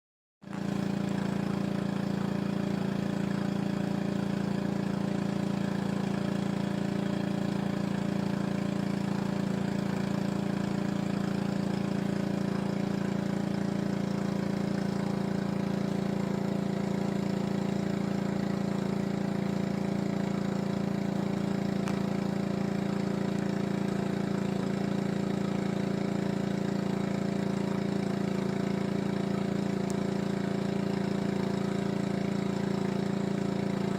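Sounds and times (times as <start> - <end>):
pressure washer engine droning: 0.5 - 33.9.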